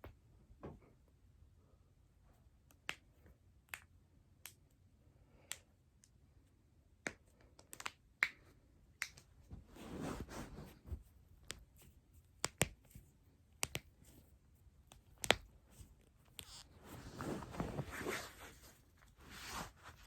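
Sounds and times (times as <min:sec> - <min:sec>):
soft rustling: 0:09.4 - 0:20.0.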